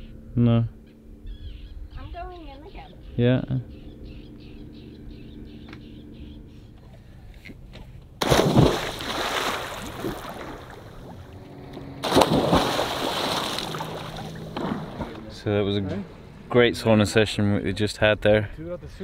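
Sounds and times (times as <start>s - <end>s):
people splashing into water: 8.2s - 11.3s, 12.0s - 15.2s
water churning: 8.2s - 15.4s.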